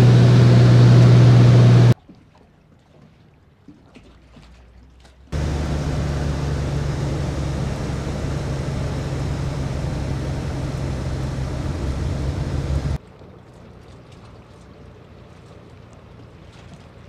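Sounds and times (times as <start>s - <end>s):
seaplane engine running: 0.0s - 2.0s, 5.3s - 17.0s.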